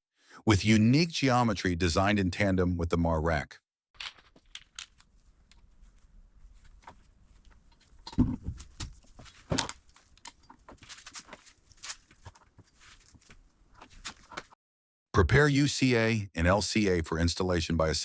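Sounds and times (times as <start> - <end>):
metal parts and tools clicking: 4.0 - 5.6.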